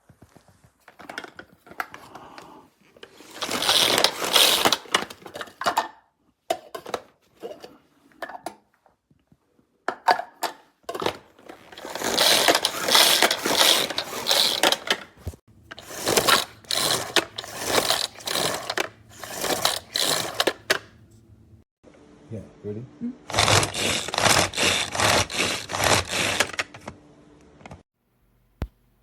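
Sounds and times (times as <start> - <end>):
manual food chopper whirring: 0.9 - 5.8, 10.9 - 21.0, 23.3 - 27.0.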